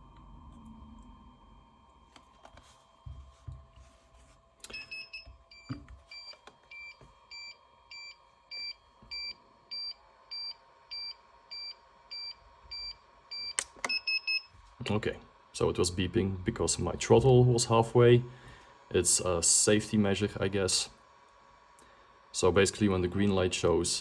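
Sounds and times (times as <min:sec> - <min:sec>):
controller warning beeps: 0:04.7 - 0:14.5.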